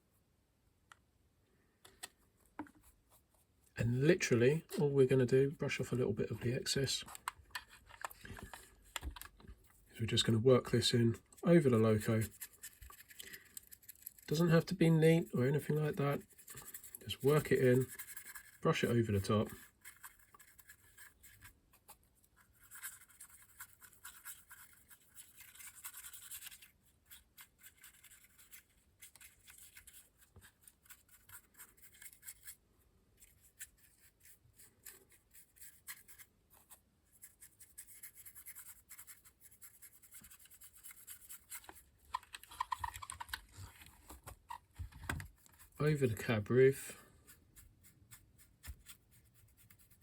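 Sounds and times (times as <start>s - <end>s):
scratchy paintbrush strokes: 9.6s - 44.1s, 45.3s - 50.0s.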